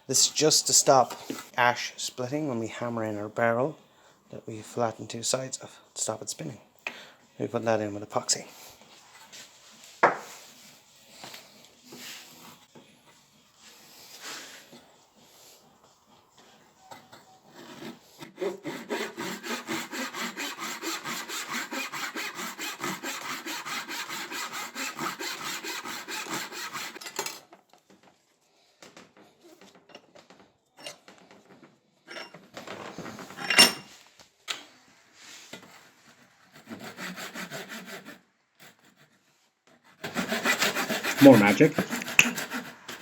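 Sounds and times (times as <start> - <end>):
scrapes on wood: 17.0 - 27.0, 35.6 - 43.0
hand tool rasping wood: 17.5 - 27.0, 36.5 - 43.0.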